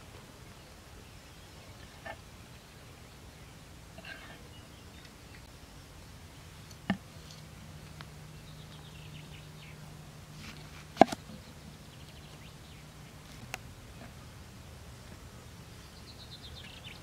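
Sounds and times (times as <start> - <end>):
faint low hum: 0.0 - 17.0
faint bird chirps: 15.6 - 17.0.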